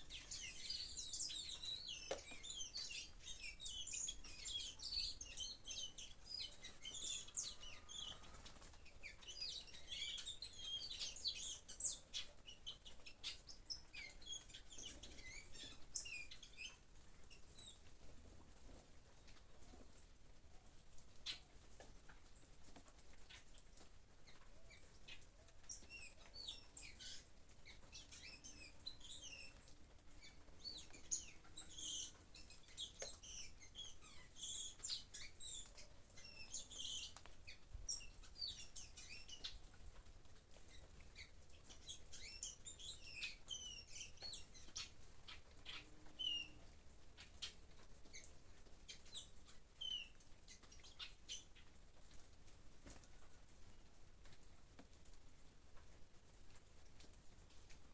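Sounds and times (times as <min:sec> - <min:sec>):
small birds chirping: 0:00.0 - 0:54.4
light rain pattering: 0:00.0 - 0:57.9.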